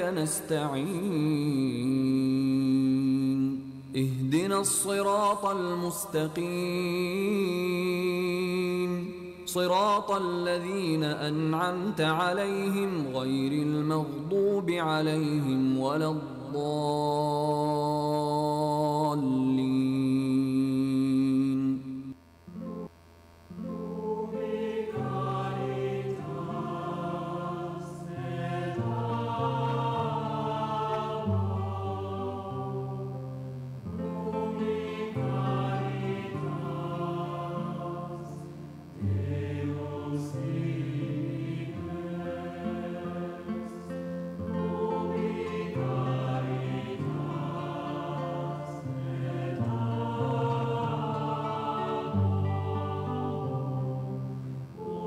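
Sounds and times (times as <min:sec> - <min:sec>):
choir singing sacred chant: 0:00.0 - 0:22.1, 0:23.9 - 0:55.0.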